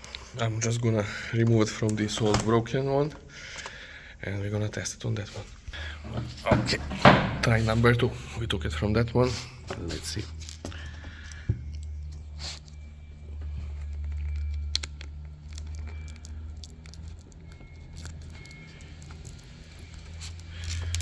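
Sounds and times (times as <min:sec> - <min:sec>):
plastic crinkling: 0:09.5 - 0:21.0.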